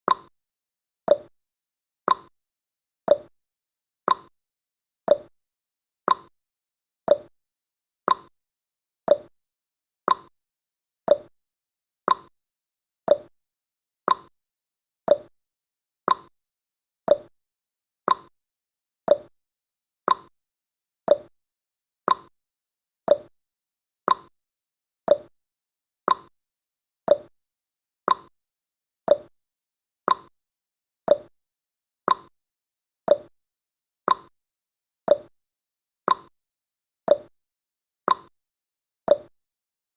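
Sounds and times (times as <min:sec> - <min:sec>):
clock ticking: 0:01.1 - 0:01.3, 0:03.1 - 0:03.3, 0:05.1 - 0:05.3, 0:07.1 - 0:07.3, 0:09.1 - 0:09.3, 0:11.1 - 0:11.3, 0:13.1 - 0:13.3, 0:15.1 - 0:15.3, 0:19.1 - 0:19.3, 0:21.1 - 0:21.3, 0:29.1 - 0:29.3, 0:31.1 - 0:31.3, 0:33.1 - 0:33.3, 0:35.1 - 0:35.3, 0:37.1 - 0:37.3, 0:39.1 - 0:39.3.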